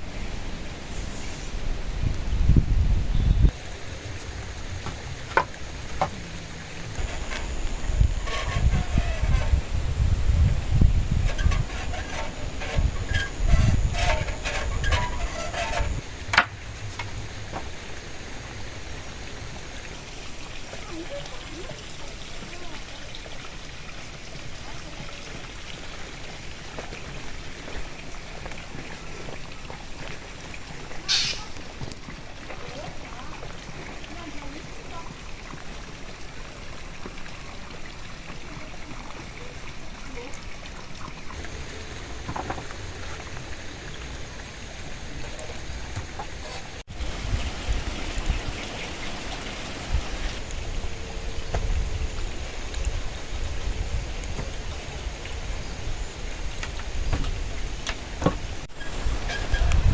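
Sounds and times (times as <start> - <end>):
gusty wind rumbling on microphone: 0.0 - 19.2, 41.4 - 59.9
steady rain: 0.0 - 59.9
drips and patters: 1.3 - 59.9
short loud hiss: 31.1 - 31.5.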